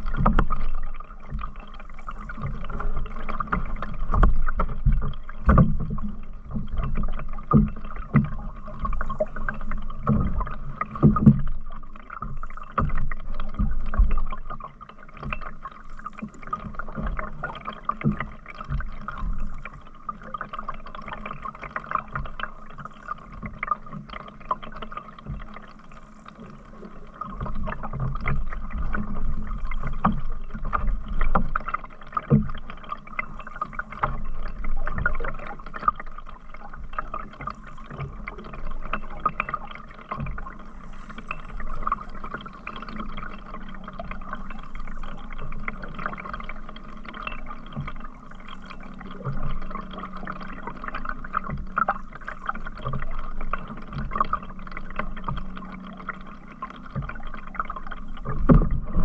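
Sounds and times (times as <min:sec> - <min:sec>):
paddle strokes: 0:00.0 - 0:59.0
water against hull: 0:00.0 - 0:59.0
low thumps: 0:58.4 - 0:59.0.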